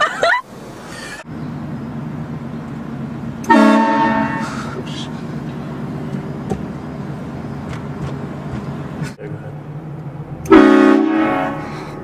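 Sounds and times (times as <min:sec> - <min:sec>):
low vehicle hum: 0:00.0 - 0:12.0
train horn blast: 0:03.4 - 0:04.7, 0:10.5 - 0:12.0.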